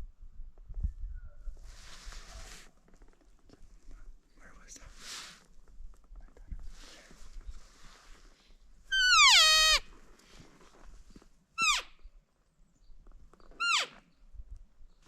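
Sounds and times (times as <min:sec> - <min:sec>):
elk calling: 0:08.9 - 0:09.8, 0:11.6 - 0:12.0, 0:13.6 - 0:14.0
elk chirps: 0:08.9 - 0:09.8, 0:11.6 - 0:12.0, 0:13.6 - 0:14.0.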